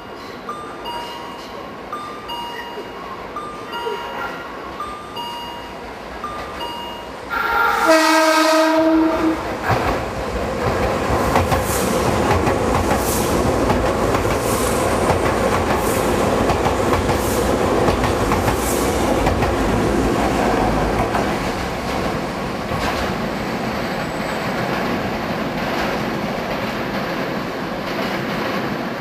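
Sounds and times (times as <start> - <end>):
train rushing past: 3.2 - 29.0
train horn blast: 7.3 - 9.6.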